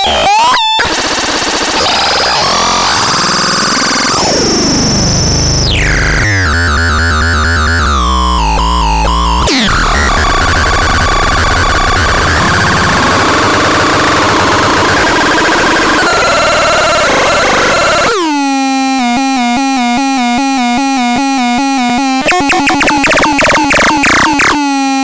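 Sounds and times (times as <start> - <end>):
synthesizer sweeping tones: 22.2 - 24.6
warbling synth tone: 22.2 - 24.6.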